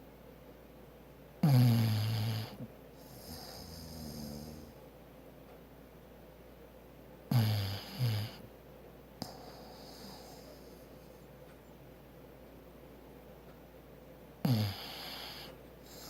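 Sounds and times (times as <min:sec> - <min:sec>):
dog snoring: 0:01.4 - 0:04.8, 0:07.3 - 0:08.5, 0:09.2 - 0:11.1, 0:14.4 - 0:16.0.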